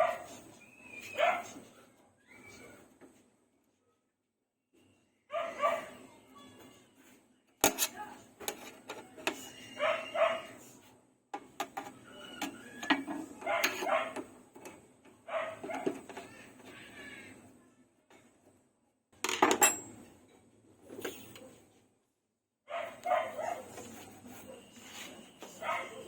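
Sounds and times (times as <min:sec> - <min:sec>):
dog barking and yelping: 0:00.0 - 0:00.4, 0:01.0 - 0:01.6, 0:05.3 - 0:06.0, 0:09.6 - 0:10.6, 0:13.4 - 0:14.3, 0:15.3 - 0:16.0, 0:22.7 - 0:23.8, 0:25.6 - 0:26.0
hard objects clicking and knocking: 0:11.3 - 0:14.8.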